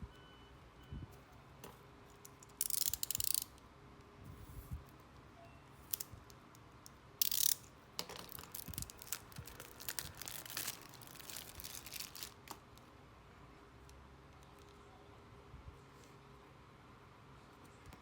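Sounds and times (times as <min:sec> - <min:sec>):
plastic crackling and clicking: 0:07.2 - 0:12.9
packaging tearing: 0:08.3 - 0:12.6.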